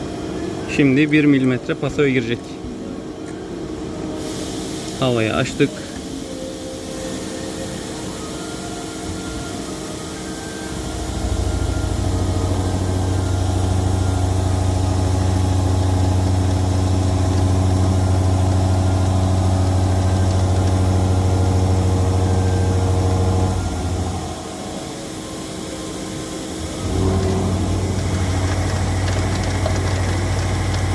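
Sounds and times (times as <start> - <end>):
compressed air hissing: 4.2 - 24.8
milling machine low hum: 5.7 - 30.9.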